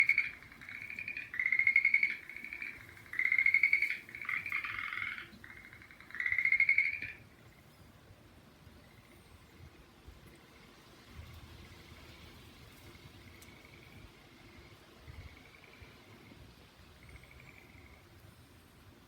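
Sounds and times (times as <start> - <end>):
frogs trilling: 0.0 - 7.7, 8.8 - 9.5, 12.9 - 18.2.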